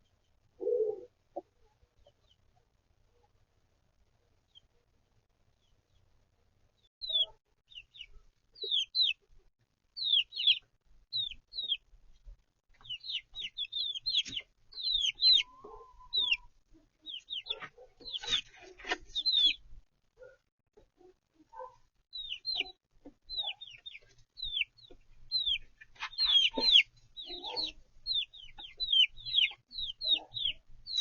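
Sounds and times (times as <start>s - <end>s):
chicks peeping: 1.3s - 2.7s, 6.8s - 31.0s
knocks and scratches: 17.4s - 19.4s, 24.8s - 26.8s.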